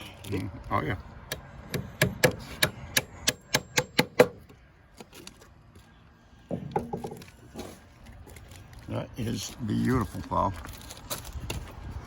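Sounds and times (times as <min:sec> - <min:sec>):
hammer strikes: 0:01.3 - 0:04.4.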